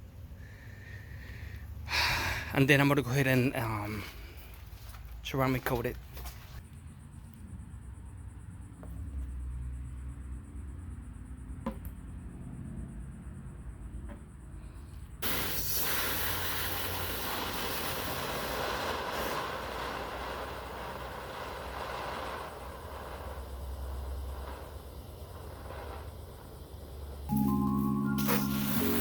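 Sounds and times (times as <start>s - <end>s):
hose water spray hissing: 15.2s - 29.0s.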